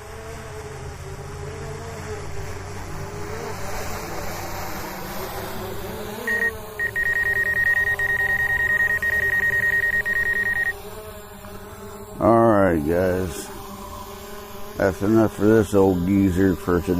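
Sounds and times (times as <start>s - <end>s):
drone propellers buzzing: 0.0s - 16.9s
rapid high electronic beeps: 6.3s - 10.7s.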